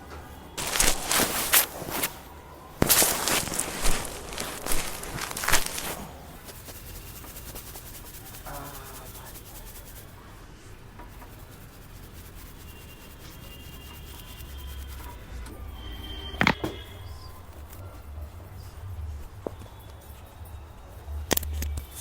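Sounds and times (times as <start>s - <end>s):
low steady background noise: 0.0s - 22.0s
hands rubbing over body: 0.6s - 10.2s, 11.1s - 15.2s.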